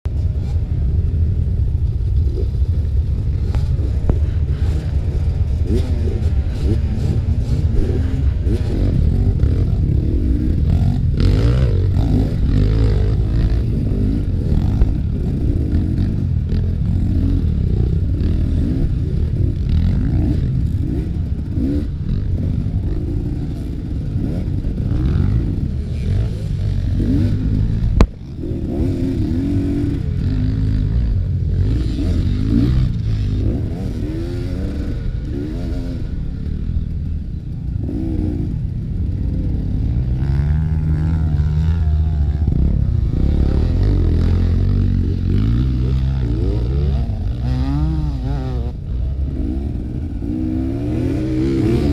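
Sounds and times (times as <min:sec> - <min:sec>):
motorcycle engine revving: 0:00.1 - 0:51.9.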